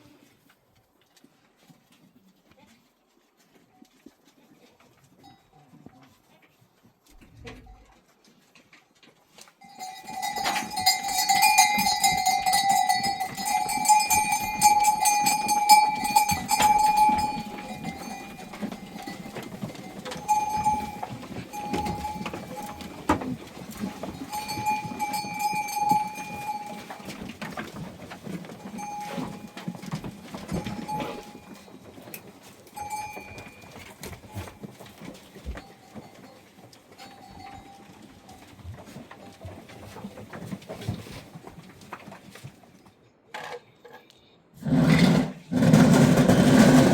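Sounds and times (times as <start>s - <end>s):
goat bells clanging: 9.6s - 41.8s.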